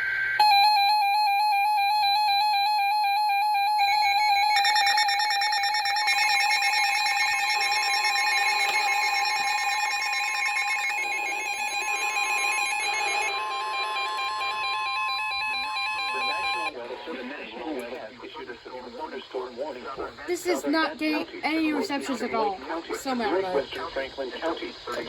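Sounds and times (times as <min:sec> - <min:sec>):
warbling electronic alert tones: 0:00.4 - 0:16.7.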